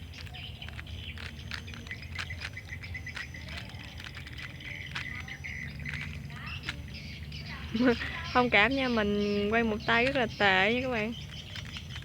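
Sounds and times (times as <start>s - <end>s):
puzzle cube layers clicking: 0.0s - 7.1s, 9.8s - 12.0s.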